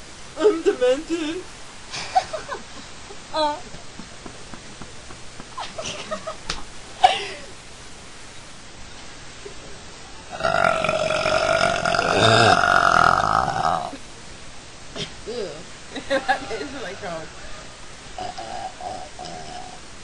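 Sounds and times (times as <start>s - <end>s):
woman belching: 10.3s - 14.0s, 18.2s - 19.8s.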